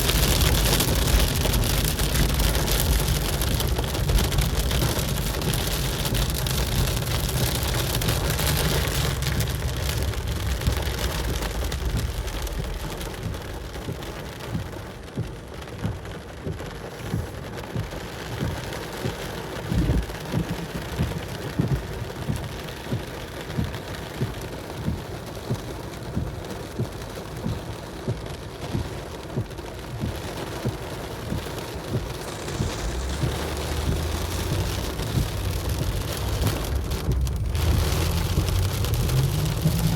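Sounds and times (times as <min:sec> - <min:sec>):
thunder rumbling: 0:00.0 - 0:14.6, 0:19.6 - 0:21.8, 0:31.3 - 0:39.9
heavy rain on a car: 0:00.0 - 0:39.9.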